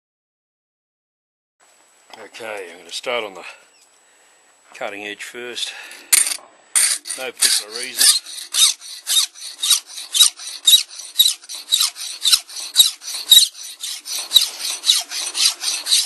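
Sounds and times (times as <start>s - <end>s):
file rasping on knife blade: 6.2s - 16.0s.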